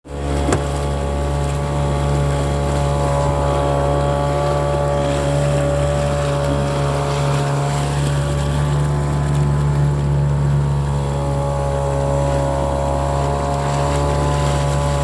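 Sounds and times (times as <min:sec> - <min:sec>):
engine droning steadily: 0:00.1 - 0:15.0.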